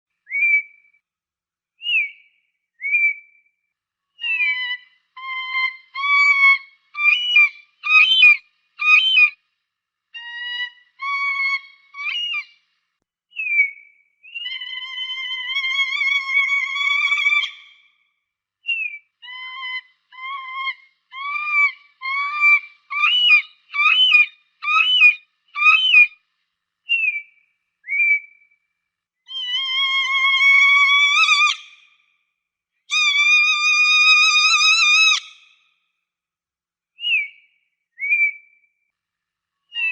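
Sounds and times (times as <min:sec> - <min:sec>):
falcon calling: 0:04.2 - 0:09.3, 0:18.7 - 0:26.1, 0:32.9 - 0:35.4.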